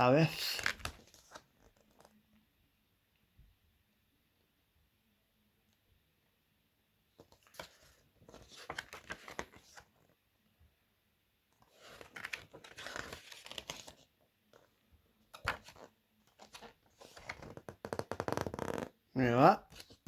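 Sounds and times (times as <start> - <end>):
paper rustling and crinkling: 0.4 - 2.2, 7.2 - 10.1, 11.6 - 14.7, 15.3 - 18.8, 19.7 - 20.0.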